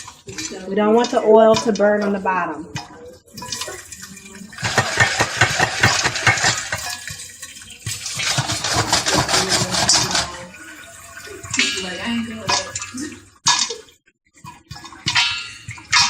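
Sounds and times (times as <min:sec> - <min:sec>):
popcorn popping in a pan: 0:00.0 - 0:13.8
pan rattling on stove: 0:03.3 - 0:13.8.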